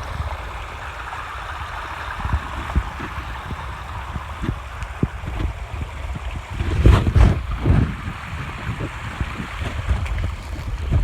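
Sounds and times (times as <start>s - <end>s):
water running over rocks: 0.0s - 11.0s.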